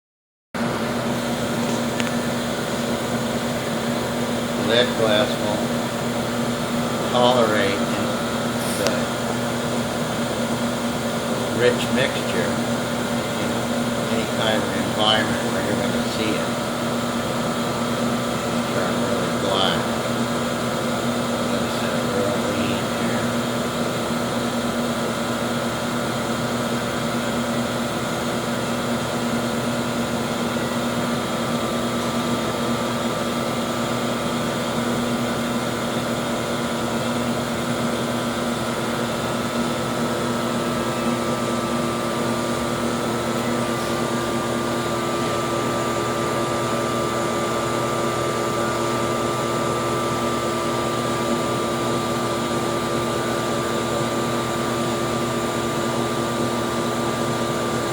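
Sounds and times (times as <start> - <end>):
faint steady hum: 0.7 - 28.4.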